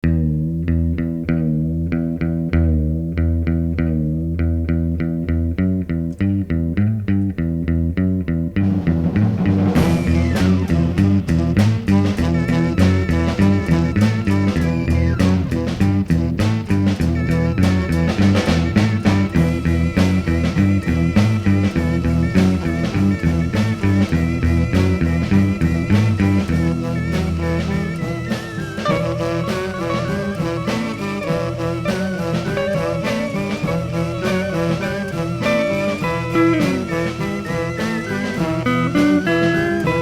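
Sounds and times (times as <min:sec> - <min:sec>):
bass guitar: 0:00.0 - 0:40.0
electric guitar: 0:00.0 - 0:40.0
drums: 0:08.5 - 0:40.0.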